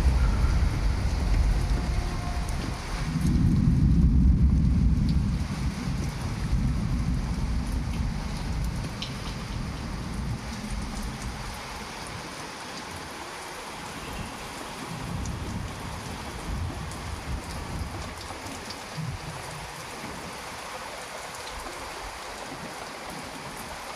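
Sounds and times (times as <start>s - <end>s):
thunder rumbling: 0.0s - 11.8s
heavy rain: 0.0s - 23.9s.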